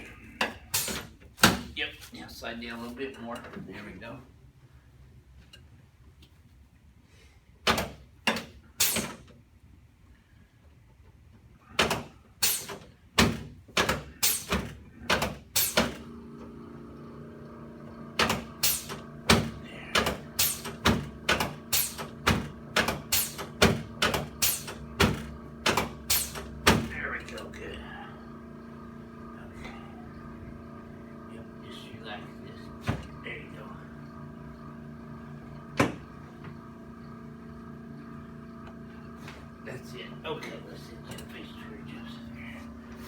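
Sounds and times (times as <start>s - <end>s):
steady hum: 13.9s - 43.0s.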